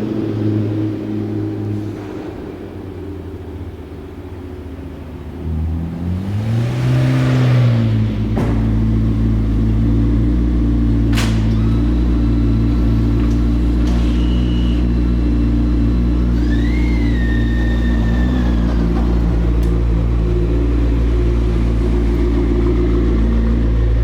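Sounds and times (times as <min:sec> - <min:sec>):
car engine revving: 0:00.0 - 0:24.0
rising whine: 0:09.4 - 0:24.0.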